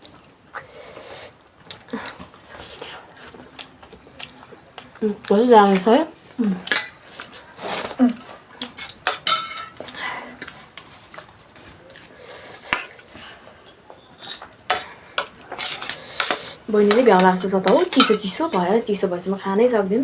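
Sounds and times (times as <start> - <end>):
cutlery clinking on plates: 6.7 - 7.9, 8.6 - 10.0, 13.7 - 18.7.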